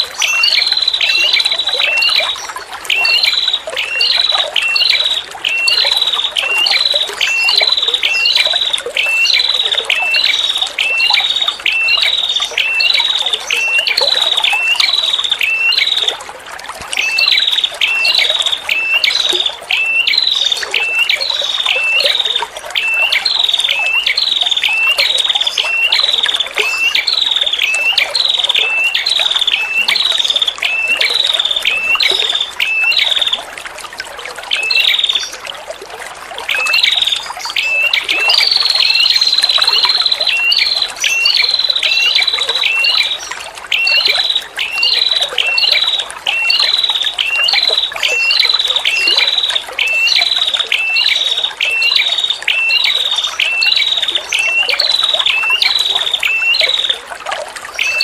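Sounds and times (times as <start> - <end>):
trickling water: 0.0 - 58.0
bird trill: 17.0 - 33.3, 36.5 - 57.0, 57.8 - 58.0.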